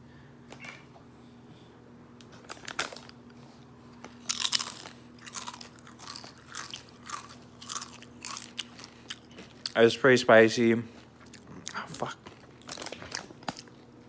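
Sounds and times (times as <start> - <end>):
person crunching tortilla chip: 4.1 - 9.8, 11.0 - 13.9.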